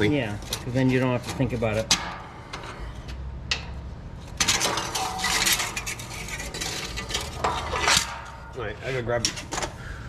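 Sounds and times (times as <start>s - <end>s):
metal tools clattering: 4.4s - 9.7s.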